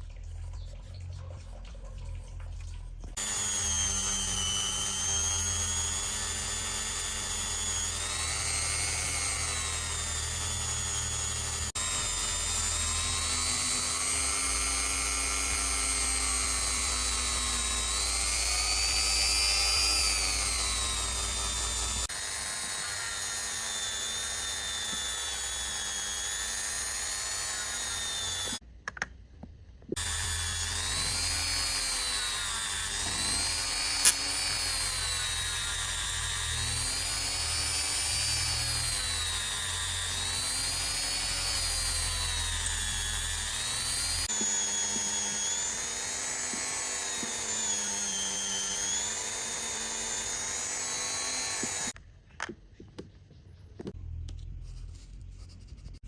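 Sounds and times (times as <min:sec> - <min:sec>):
rotary tool whining: 0:02.8 - 0:28.6, 0:29.9 - 0:52.0.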